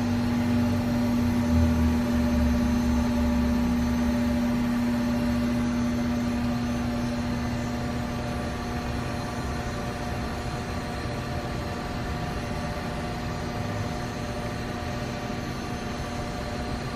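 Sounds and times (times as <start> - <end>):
machine hum with whining tones: 0.0 - 16.9.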